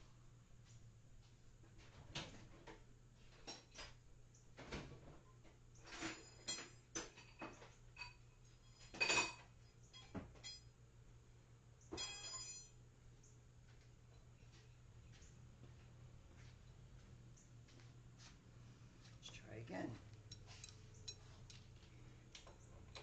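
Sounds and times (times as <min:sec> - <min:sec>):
metal hand tools clinking: 0:20.2 - 0:21.6.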